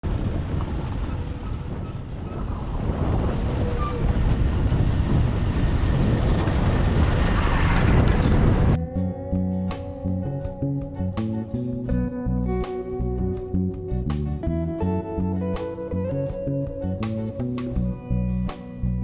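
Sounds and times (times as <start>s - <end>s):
vehicle rumble on road: 0.0s - 8.9s
wind buffeting microphone: 0.0s - 19.0s.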